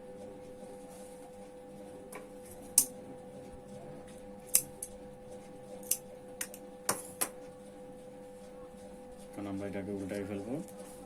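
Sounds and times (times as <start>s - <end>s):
steady hum: 0.0s - 11.0s
scissors snipping fabric: 5.8s - 7.1s.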